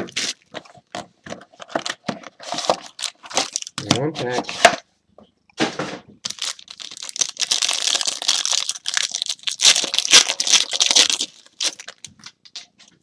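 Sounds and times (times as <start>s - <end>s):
wrapper tearing and crinkling: 1.6s - 4.7s, 6.2s - 12.7s.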